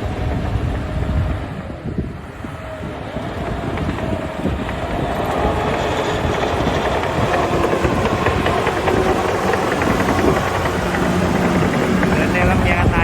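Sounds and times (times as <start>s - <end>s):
bulldozer diesel engine: 0.0s - 13.0s
steel tracks clattering: 2.2s - 13.0s.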